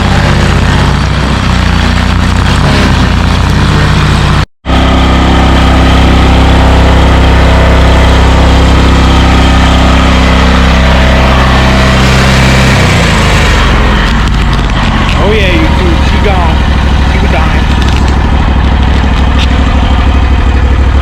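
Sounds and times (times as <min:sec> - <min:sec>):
large engine running: 0:00.0 - 0:21.0.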